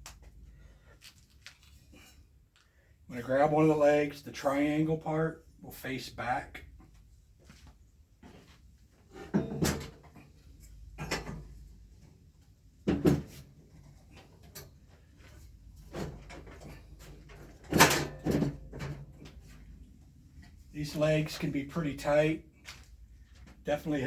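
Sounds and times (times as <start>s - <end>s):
knocks and clunks on chair frame: 9.1s - 10.2s, 12.8s - 13.4s.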